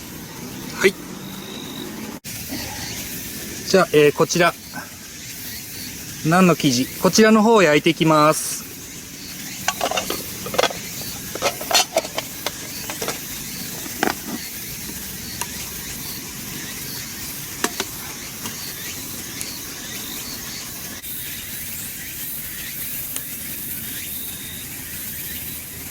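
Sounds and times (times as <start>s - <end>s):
steady hiss: 0.0s - 25.9s
sharp clicks and knocks: 9.7s - 14.5s, 17.6s - 18.6s.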